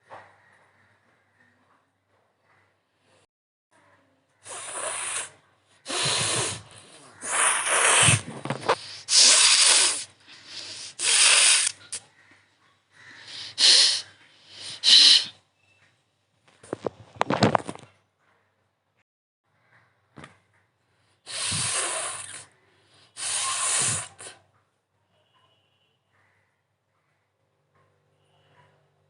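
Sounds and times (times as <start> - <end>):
person blowing nose hard: 4.4 - 12.0, 13.2 - 15.4, 21.3 - 24.4.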